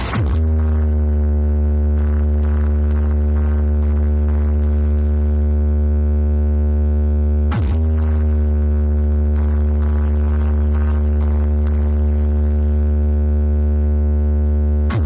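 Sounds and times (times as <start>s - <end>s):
deep bass tone from speakers: 0.0s - 15.0s.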